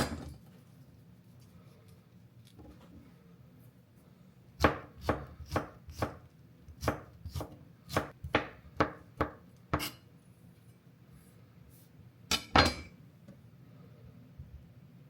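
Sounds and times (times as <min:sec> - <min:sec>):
knife chopping on cutting board: 0:04.6 - 0:09.9.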